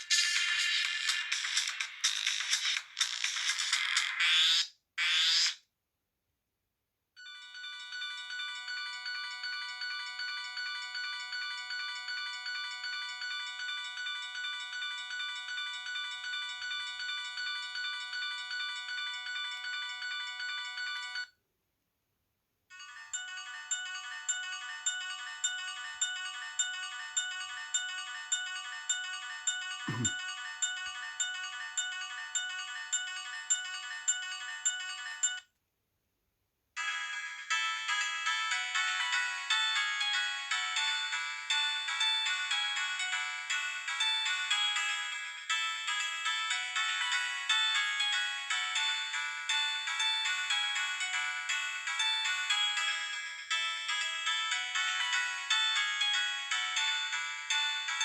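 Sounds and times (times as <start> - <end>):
ringtone with regular beat: 0.0 - 4.7, 22.8 - 35.5, 36.9 - 58.0
phone ringtone melody: 7.2 - 21.4, 22.7 - 35.5, 36.8 - 58.0.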